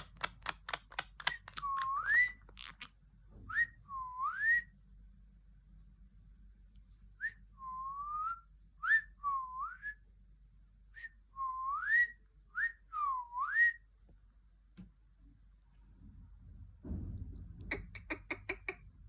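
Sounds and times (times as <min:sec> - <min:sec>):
parrot whistling: 0:01.2 - 0:02.8.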